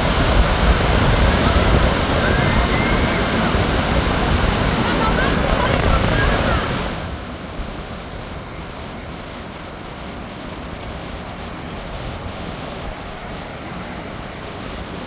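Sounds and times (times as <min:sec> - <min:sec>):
strong wind: 0:00.0 - 0:15.0
surf: 0:00.0 - 0:15.0
wind buffeting microphone: 0:00.0 - 0:15.0.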